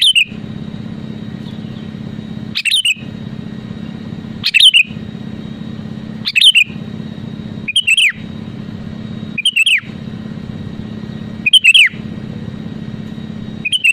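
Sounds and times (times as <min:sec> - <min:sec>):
bird whistled calls: 0:00.0 - 0:00.4, 0:01.4 - 0:03.1, 0:04.4 - 0:05.0, 0:06.2 - 0:06.8, 0:07.6 - 0:08.3, 0:09.3 - 0:10.0, 0:11.4 - 0:12.1, 0:13.6 - 0:13.9
steady low hum: 0:00.0 - 0:13.9.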